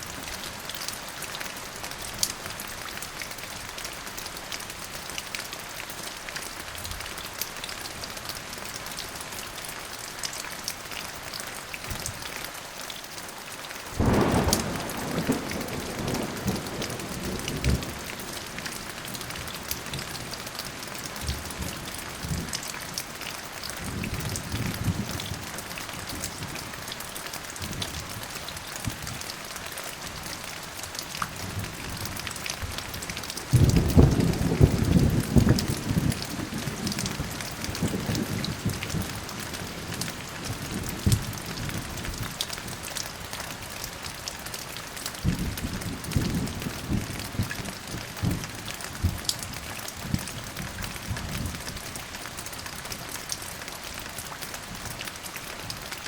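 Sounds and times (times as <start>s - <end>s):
steady rain falling: 0.0s - 56.0s
thunder rumbling: 14.0s - 18.9s.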